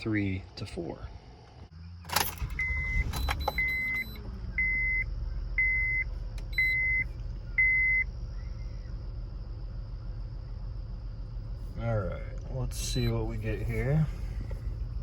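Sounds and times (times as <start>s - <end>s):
engine cranking and idling: 2.1s - 15.0s
warning chime beeping: 2.4s - 7.0s, 12.8s - 13.6s.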